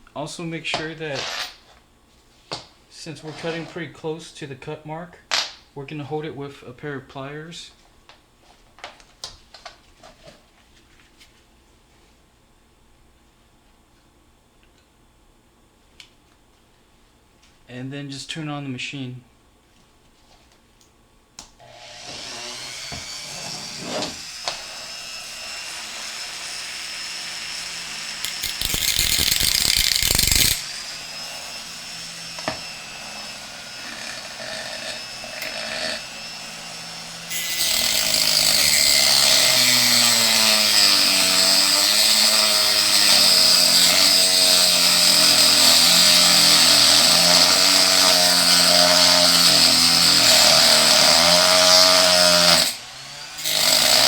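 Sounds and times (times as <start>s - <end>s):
cutoff wheel grinding bolt: 28.2s - 30.6s
rotary tool whine: 28.2s - 32.6s.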